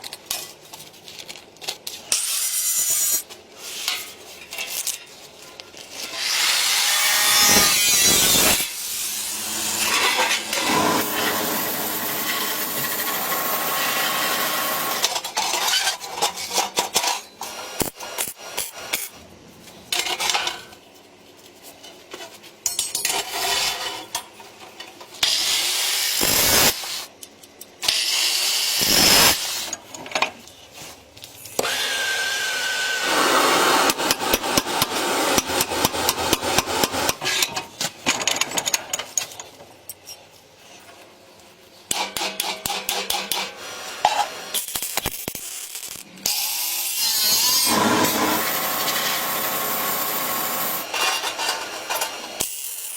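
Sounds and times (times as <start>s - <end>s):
power tool noise: 6.1s - 15.1s, 25.2s - 27.1s, 27.8s - 29.7s, 31.6s - 37.2s, 45.7s - 52.8s.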